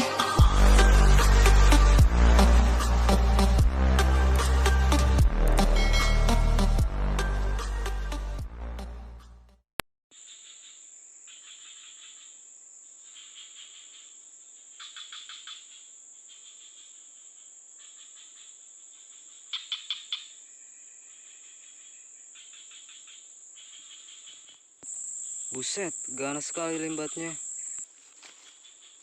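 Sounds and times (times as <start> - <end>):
insects chirping: 10.1 - 29.0
crickets trilling: 10.2 - 29.0.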